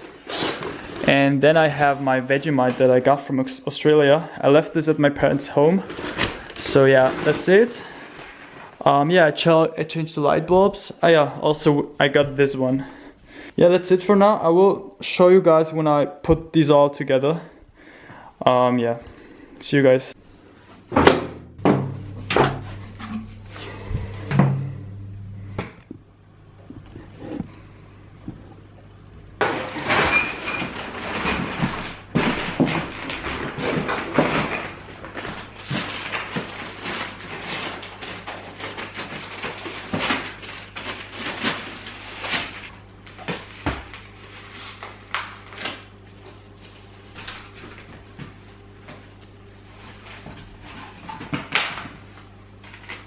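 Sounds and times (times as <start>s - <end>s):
household items knocking: 21.1s - 23.3s.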